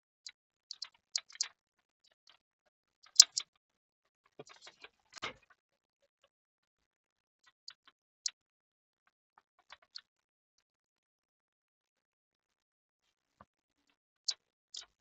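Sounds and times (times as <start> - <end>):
small parts clicking and tapping: 0.7 - 1.5, 3.0 - 3.4.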